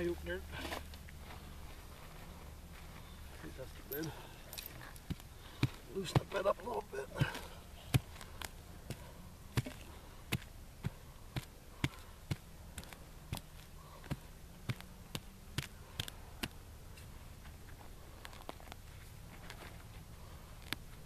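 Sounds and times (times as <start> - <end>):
hand tool striking dirt: 3.9 - 19.6.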